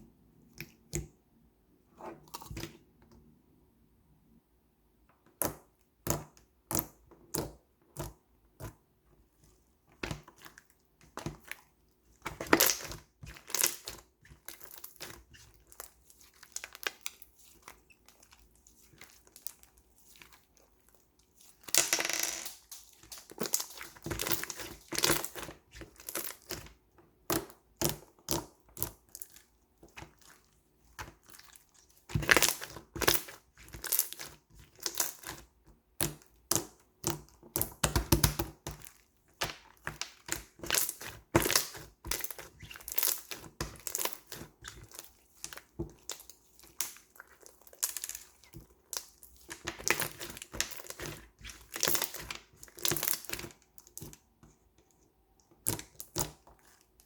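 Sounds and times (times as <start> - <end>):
slime crackling: 10.2 - 26.7, 28.3 - 54.2.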